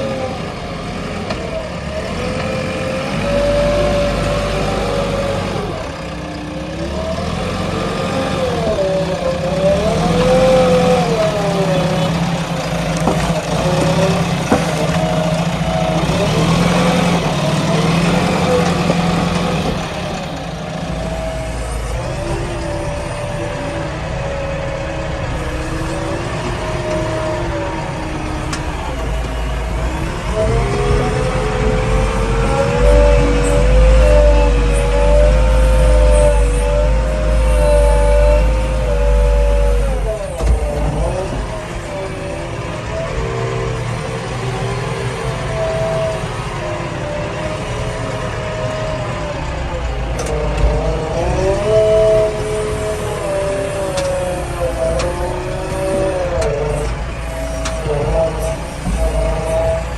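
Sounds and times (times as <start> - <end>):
diesel engine working: 0.0 - 59.9.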